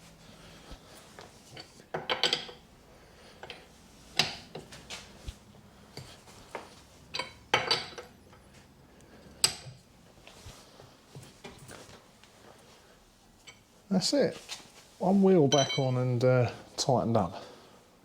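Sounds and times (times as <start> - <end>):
wheel brace clanking on bolts: 7.1 - 8.5.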